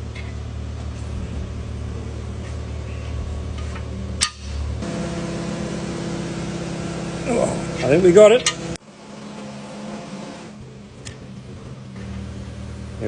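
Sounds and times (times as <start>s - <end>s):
low motor hum: 0.0s - 13.0s
sharp metallic click: 4.2s - 4.6s.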